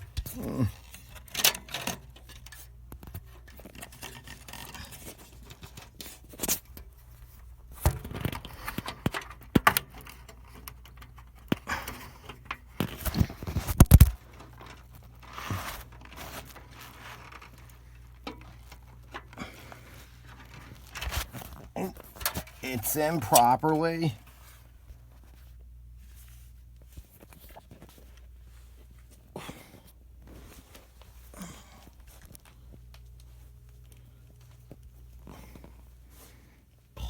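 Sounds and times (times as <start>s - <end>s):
clicks and knocks of hard parts: 7.8s - 14.8s, 20.3s - 22.6s.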